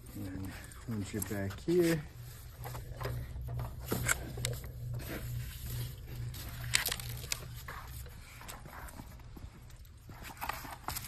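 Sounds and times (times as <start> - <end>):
low pulsing hum: 0.0 - 11.0
cable scraping and clicking: 2.6 - 9.0.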